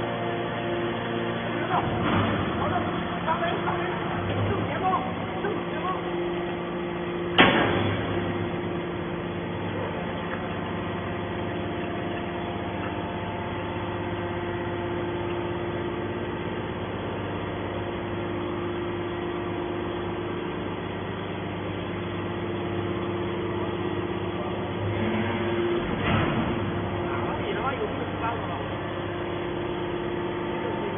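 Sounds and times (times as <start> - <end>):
baler machine hum: 0.0 - 30.9.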